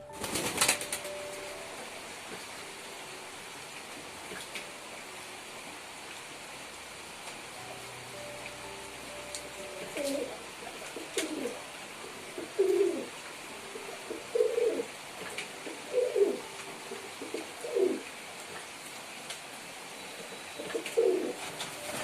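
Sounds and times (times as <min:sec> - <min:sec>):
pigeons cooing: 0:09.8 - 0:18.1, 0:20.6 - 0:22.0.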